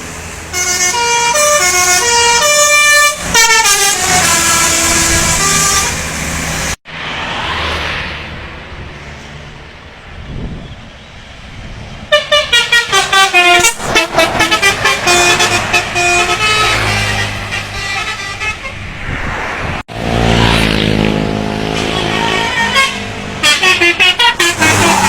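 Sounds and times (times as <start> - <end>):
bus engine rumble: 0.0 - 25.0
tuned bus air horns tooting: 0.5 - 6.8, 12.1 - 18.9, 21.7 - 25.0.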